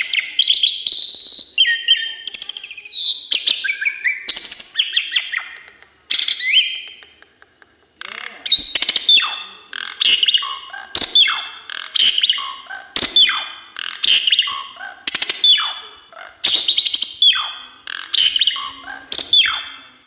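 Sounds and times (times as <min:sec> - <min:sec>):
starling singing: 0:00.0 - 0:07.0, 0:08.0 - 0:20.0
bird sharp clicks: 0:03.4 - 0:15.8.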